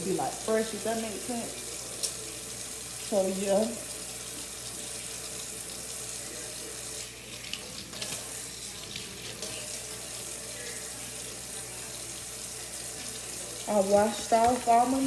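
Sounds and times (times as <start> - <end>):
tap running into a sink: 7.4 - 9.8, 12.8 - 15.0.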